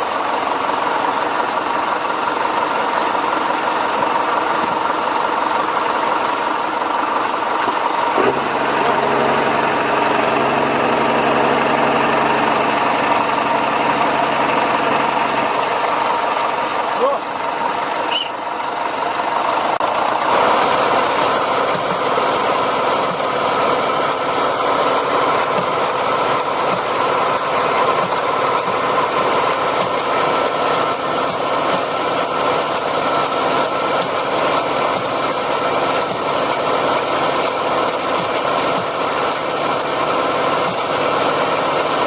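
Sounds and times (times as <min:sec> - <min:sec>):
heavy diesel engine running: 0:00.0 - 0:42.0.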